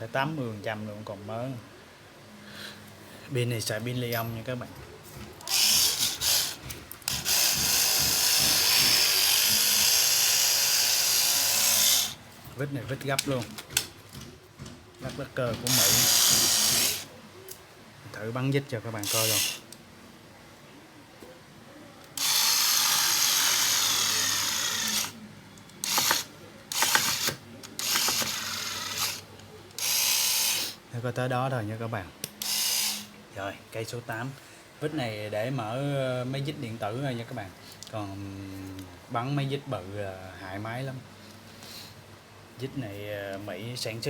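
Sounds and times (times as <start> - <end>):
cordless screwdriver motor running: 5.5 - 12.2, 15.6 - 17.1, 19.0 - 19.6, 22.2 - 25.2, 25.8 - 29.2, 29.8 - 30.8, 32.4 - 33.1.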